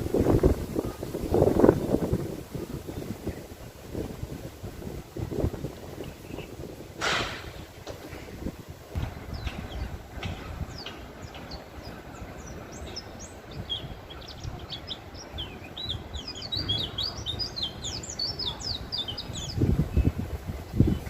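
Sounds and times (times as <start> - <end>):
bird twittering: 9.0 - 19.6.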